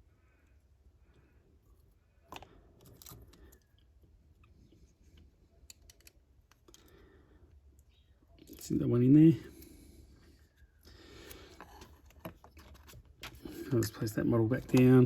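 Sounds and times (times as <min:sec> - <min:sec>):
small clicks: 0:05.2 - 0:07.0.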